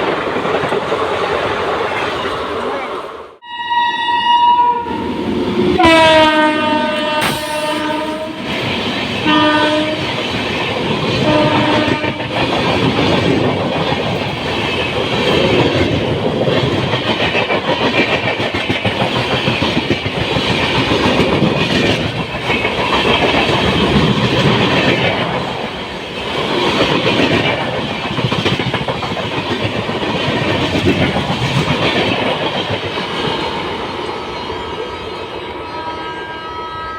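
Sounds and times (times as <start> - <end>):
train rushing past: 0.0 - 36.7
train horn blasts: 3.4 - 8.5, 9.2 - 10.1, 11.2 - 12.4, 35.6 - 36.9.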